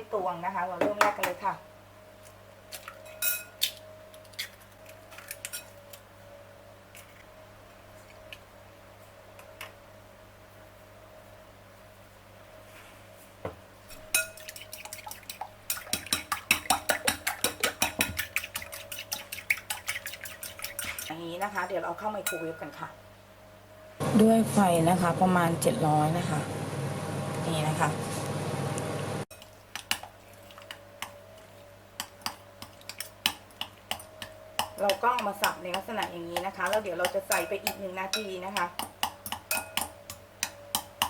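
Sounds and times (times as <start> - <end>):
fork whisking eggs in a bowl: 14.1 - 21.2, 29.3 - 41.0
microwave oven humming: 22.6 - 29.3.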